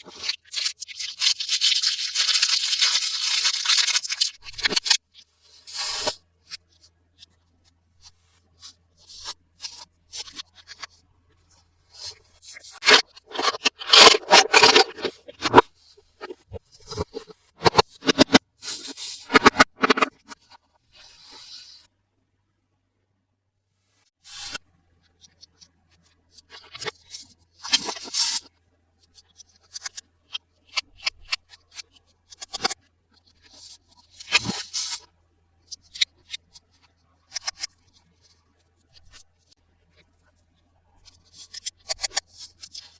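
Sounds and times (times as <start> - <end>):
toy packaging scraping and rustling: 0.0 - 5.0, 5.6 - 6.6, 8.6 - 11.0, 11.9 - 21.8, 26.5 - 28.5, 33.4 - 35.1.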